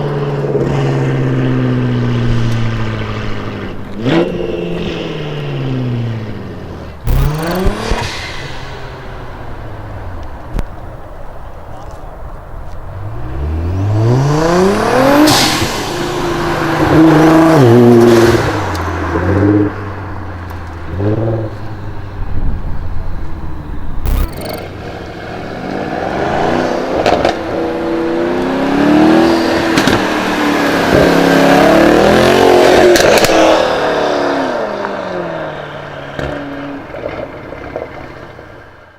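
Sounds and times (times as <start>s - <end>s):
car engine revving hard: 7.1s - 10.3s, 13.0s - 22.4s, 24.1s - 24.6s
exhaust pops: 7.1s - 10.9s.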